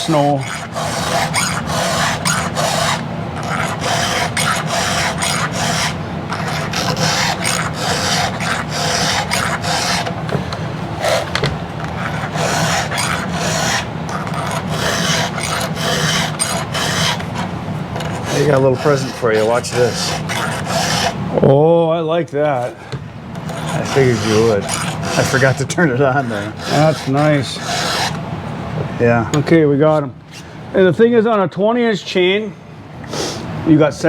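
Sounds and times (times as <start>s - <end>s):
file rasping on chainsaw chain: 0.0s - 10.2s, 11.0s - 21.2s, 23.5s - 28.2s.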